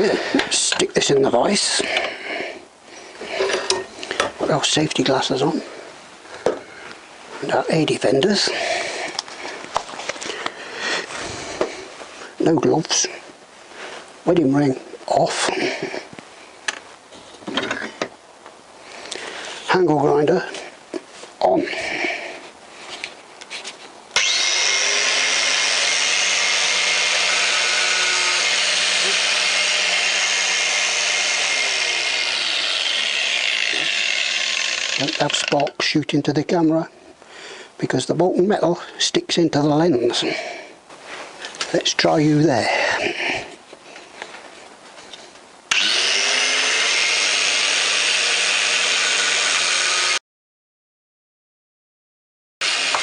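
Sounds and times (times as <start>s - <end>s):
angle grinder whining: 24.2s - 35.8s, 45.7s - 50.2s, 52.6s - 53.0s.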